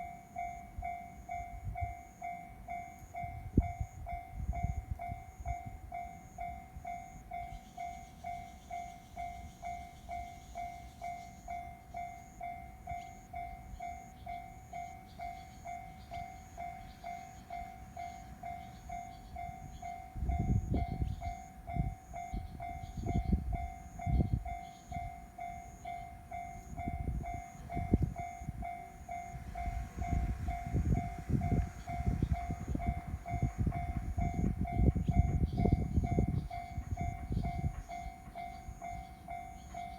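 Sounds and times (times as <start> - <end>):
level-crossing warning bell ringing: 0.0 - 39.9
train passing with low rumble: 0.0 - 39.9
train wheels thudding over rail joints: 29.4 - 39.9.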